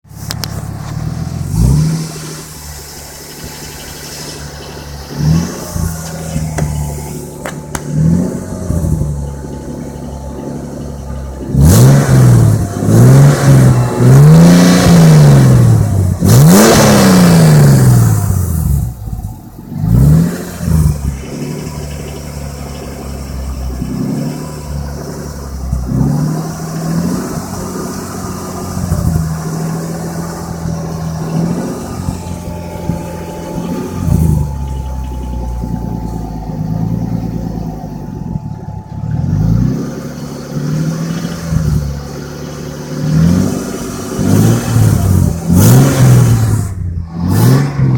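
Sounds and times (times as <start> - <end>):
car engine idling: 0.0 - 47.9
car engine revving: 0.0 - 47.9
engine knock: 6.2 - 11.7, 20.5 - 47.9.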